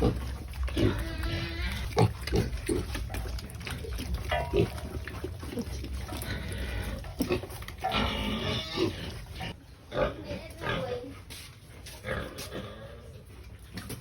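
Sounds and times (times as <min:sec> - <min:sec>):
pigs calling: 0:00.0 - 0:11.1.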